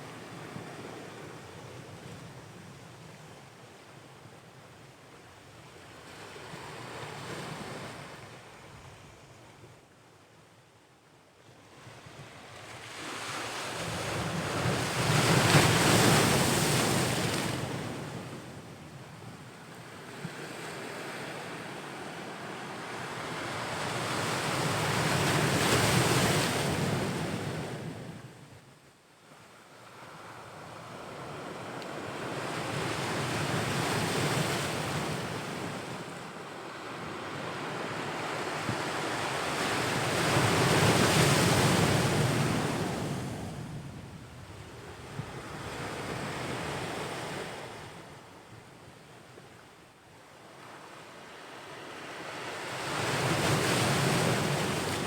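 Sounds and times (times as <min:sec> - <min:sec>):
ocean waves breaking on shore: 0:51.4 - 0:55.0.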